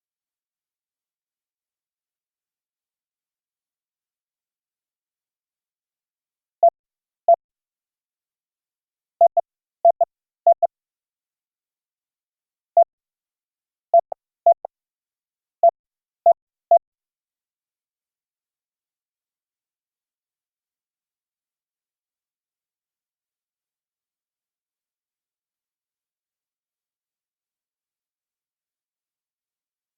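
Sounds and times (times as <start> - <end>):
morse code beeps: 9.2 - 10.6.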